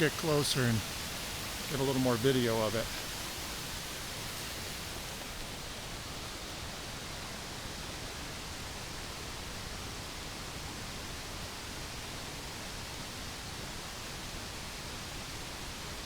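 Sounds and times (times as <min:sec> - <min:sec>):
waterfall rushing: 0:00.0 - 0:05.8.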